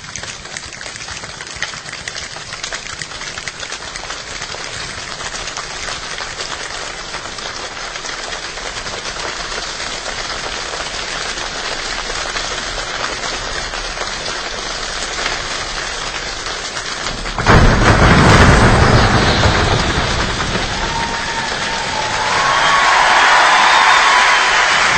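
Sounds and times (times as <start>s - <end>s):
rain patter: 0.0s - 24.9s
deep rumble: 17.0s - 22.8s.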